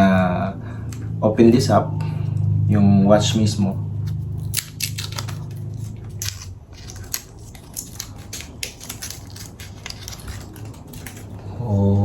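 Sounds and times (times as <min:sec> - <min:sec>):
paper and cardboard crinkling: 0:04.1 - 0:11.4.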